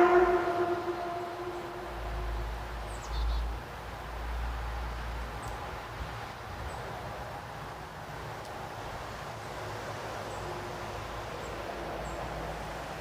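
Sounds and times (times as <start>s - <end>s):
low rumble: 0.0s - 2.8s.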